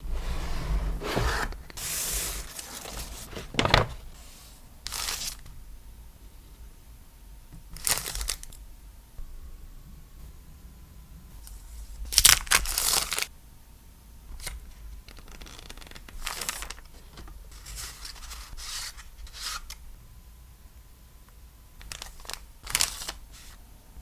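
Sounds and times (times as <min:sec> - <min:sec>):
wrapping crinkling and tearing: 0:15.1 - 0:18.5, 0:21.9 - 0:23.2.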